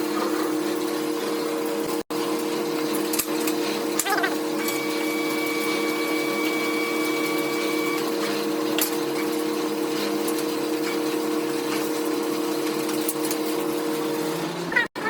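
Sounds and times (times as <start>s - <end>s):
machine hum: 0.0s - 14.7s
thin high whine: 4.6s - 8.2s.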